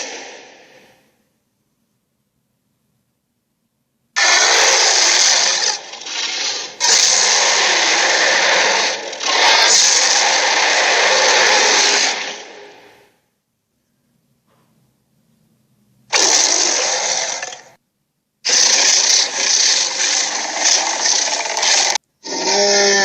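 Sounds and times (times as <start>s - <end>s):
harsh rasping dinosaur roar: 4.2s - 12.9s, 16.1s - 17.7s, 18.5s - 23.0s.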